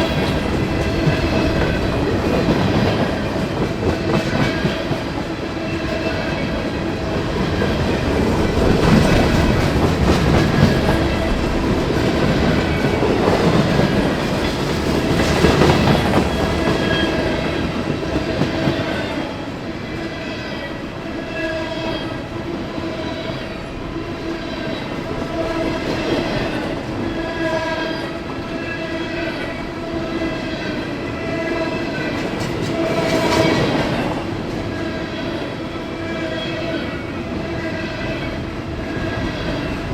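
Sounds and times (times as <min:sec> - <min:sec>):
train wheels clattering over rails: 0:00.0 - 0:19.3, 0:30.3 - 0:35.1.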